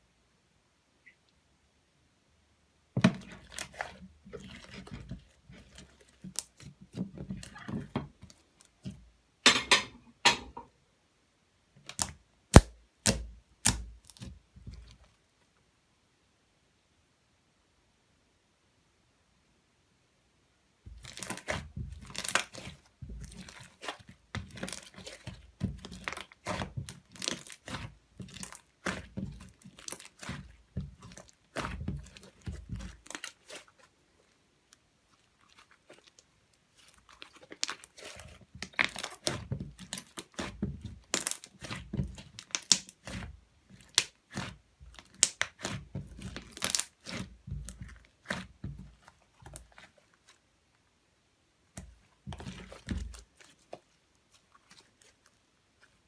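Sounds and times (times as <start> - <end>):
hands kneading sticky slime: 3.0 - 9.0, 11.8 - 15.3, 20.9 - 51.0, 51.6 - 56.0.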